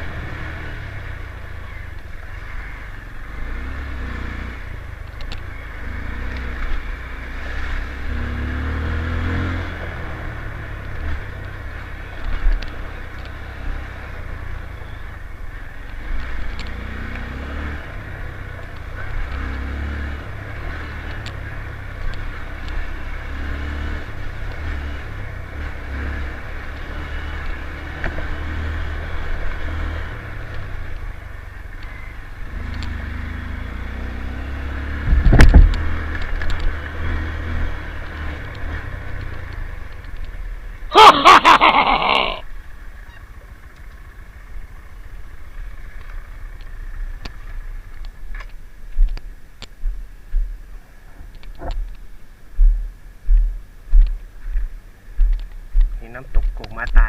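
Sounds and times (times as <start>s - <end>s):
motorcycle engine: 0.0s - 57.0s
wind rumble on microphone: 35.0s - 36.7s.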